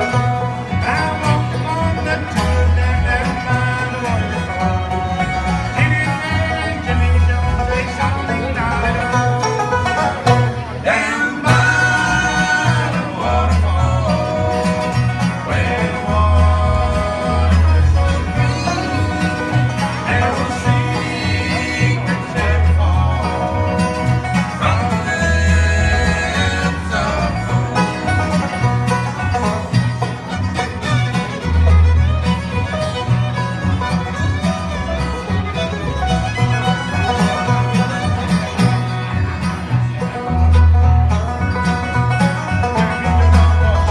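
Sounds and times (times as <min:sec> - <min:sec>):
banjo: 0:00.0 - 0:43.9
fiddle: 0:00.0 - 0:43.9
guitar: 0:00.0 - 0:43.9
pulsing bass line: 0:00.0 - 0:43.9.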